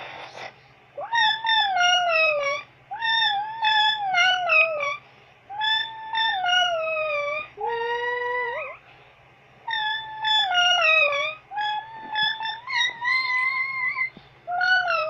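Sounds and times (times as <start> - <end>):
electronic toy howling tones: 9.7 - 15.0.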